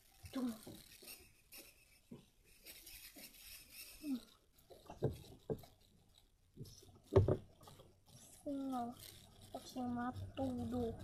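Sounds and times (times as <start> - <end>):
small objects being handled: 0.0 - 11.0
soft knocks: 6.6 - 7.5.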